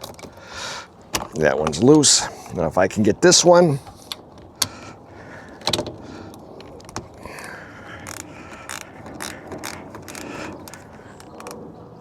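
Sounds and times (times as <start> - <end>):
socket ratchet clicking: 6.6 - 11.6.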